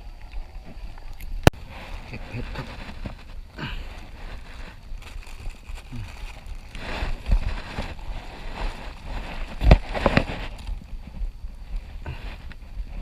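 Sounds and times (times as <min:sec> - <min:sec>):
wind rumble on microphone: 0:00.0 - 0:13.0
rustling: 0:00.5 - 0:13.0.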